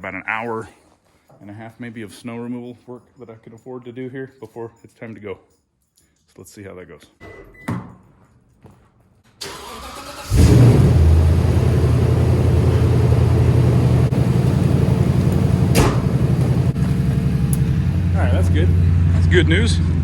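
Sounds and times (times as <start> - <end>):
truck engine starting and idling: 9.3 - 20.0.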